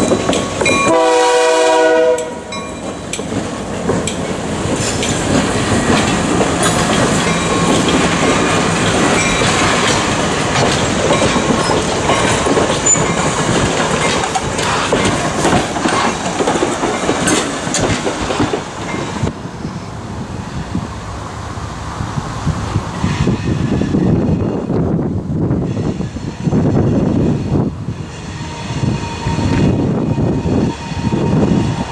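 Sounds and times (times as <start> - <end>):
train wheels clacking on rails: 0.0 - 20.7.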